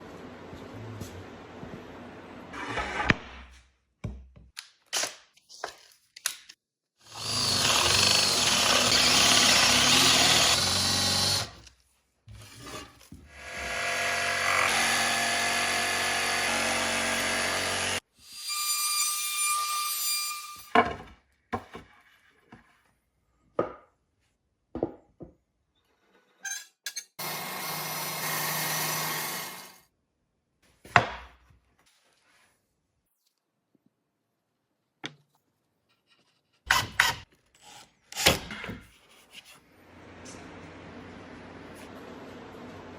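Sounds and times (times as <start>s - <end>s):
power tools cutting wood: 7.0s - 11.7s, 13.3s - 19.7s, 27.2s - 29.8s.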